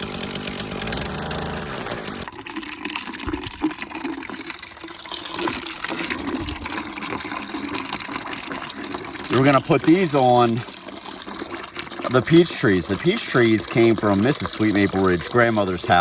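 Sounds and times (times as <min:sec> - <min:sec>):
small engine hum: 0:00.0 - 0:02.3
water pouring onto the ground: 0:02.2 - 0:16.0.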